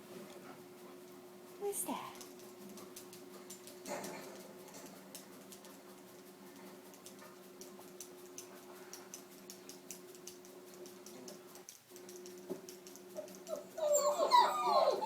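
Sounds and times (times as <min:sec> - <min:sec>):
faint rapid ticking: 0:01.9 - 0:13.6
dog whimpering and yelping: 0:13.2 - 0:15.0.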